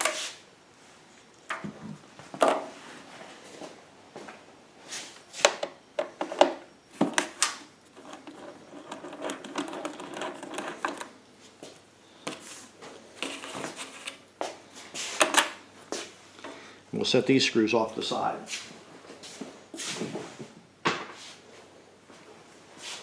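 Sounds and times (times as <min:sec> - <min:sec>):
scraping and clattering: 0:07.9 - 0:11.1.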